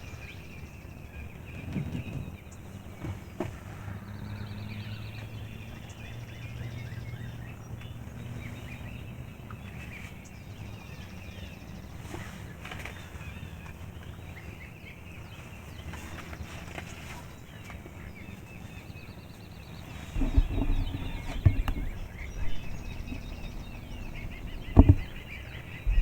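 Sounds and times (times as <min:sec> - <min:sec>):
songbirds chirping and singing: 0:00.0 - 0:26.0
low steady hum: 0:20.0 - 0:26.0.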